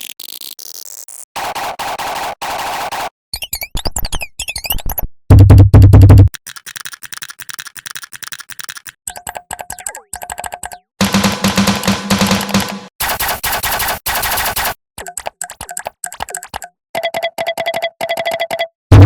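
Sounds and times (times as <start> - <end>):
processed mouse clicks: 6.4 - 10.9, 12.3 - 18.7.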